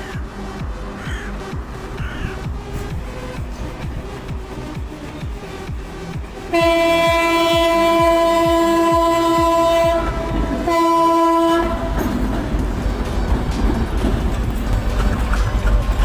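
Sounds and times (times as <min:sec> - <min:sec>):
diesel engine rumble: 0:00.0 - 0:16.0
train wheels on rails: 0:00.0 - 0:16.0
locomotive horn blast: 0:06.5 - 0:12.3.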